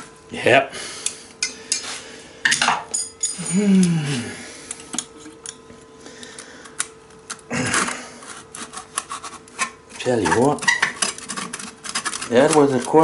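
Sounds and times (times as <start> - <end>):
metal pieces clinking: 2.5 - 3.7.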